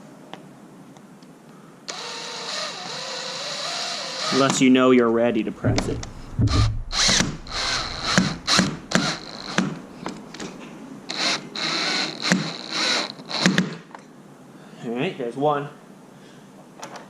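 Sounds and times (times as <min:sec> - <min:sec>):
power drill driving a screw: 0:01.9 - 0:04.6, 0:06.9 - 0:09.8, 0:11.1 - 0:13.8
drill clicks: 0:06.0 - 0:09.8.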